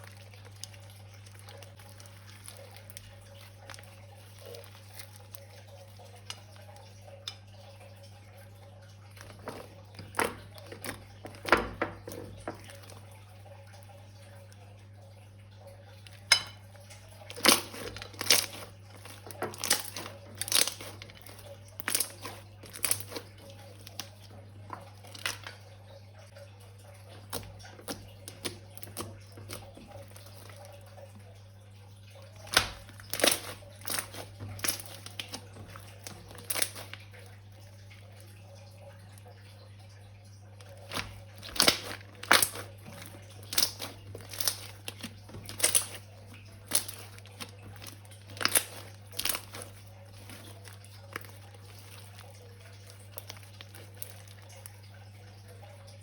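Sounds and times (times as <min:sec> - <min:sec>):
slime crackling and popping: 0:17.3 - 0:25.5, 0:27.3 - 0:30.6, 0:32.4 - 0:37.0, 0:40.7 - 0:54.6.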